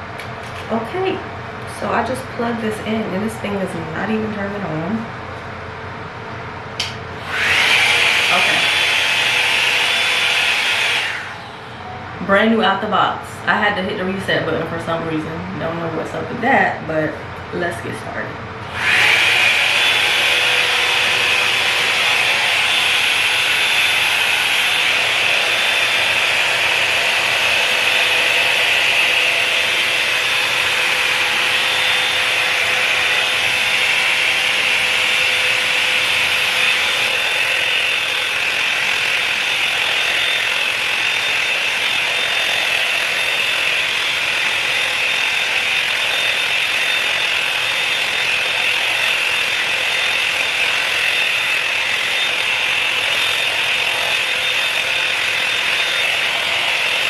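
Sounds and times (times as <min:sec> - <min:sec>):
faint hum: 0:00.0 - 0:07.2
hot-air brush dryer blowing: 0:06.8 - 0:12.1, 0:18.6 - 0:57.0.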